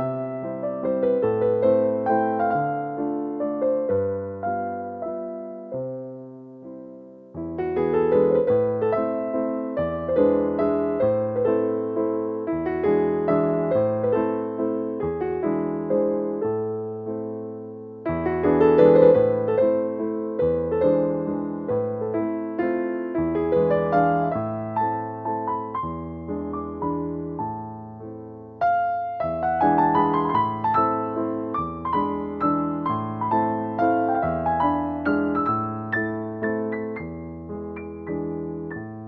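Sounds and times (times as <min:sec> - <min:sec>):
soft electric piano melody: 0:00.0 - 0:39.0.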